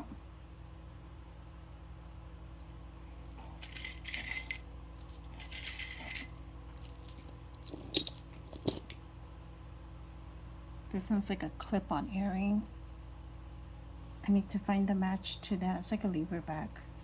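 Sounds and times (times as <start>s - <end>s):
electric fan humming: 0.0s - 17.0s
jewelry jingling and clinking: 3.3s - 9.0s.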